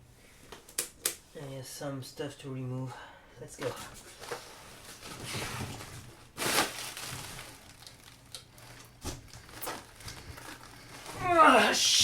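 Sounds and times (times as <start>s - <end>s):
packing material rustling: 4.1s - 11.8s.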